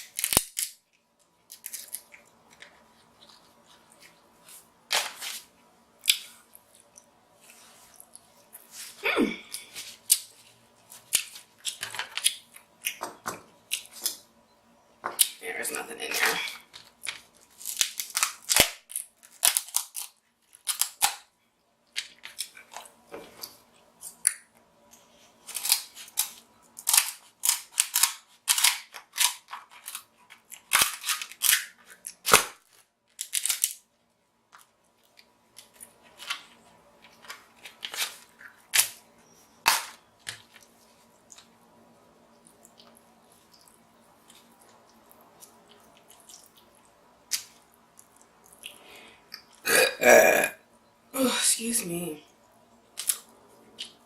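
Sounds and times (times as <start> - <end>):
crab shells cracking: 0.0 - 3.2, 16.6 - 21.3, 25.5 - 33.9, 52.9 - 54.0.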